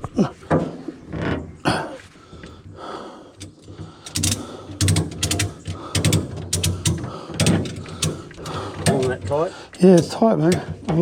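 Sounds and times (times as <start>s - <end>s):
ratchet strap pawl clicking: 3.4s - 10.7s.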